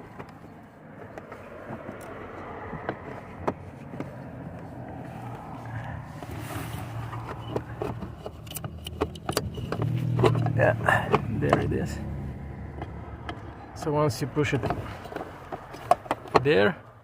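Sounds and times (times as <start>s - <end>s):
light clicks and knocks: 7.0s - 11.9s, 12.6s - 16.7s.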